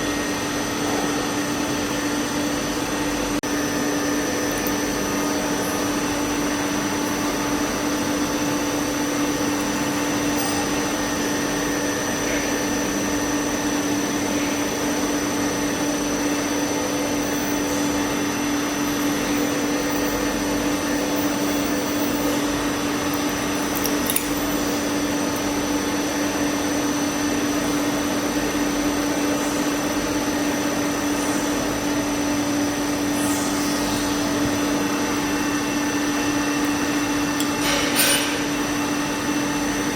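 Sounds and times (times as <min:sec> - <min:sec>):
machine motor hum: 0:03.4 - 0:39.9.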